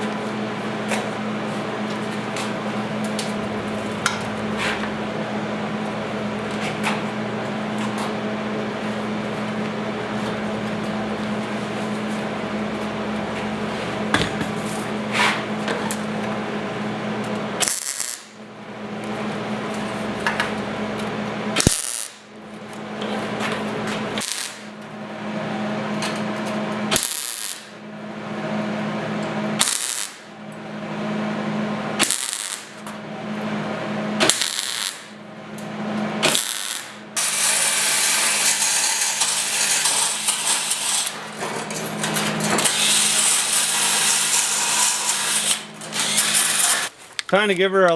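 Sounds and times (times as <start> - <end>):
power tool on metal: 27.0 - 27.7, 36.2 - 46.9.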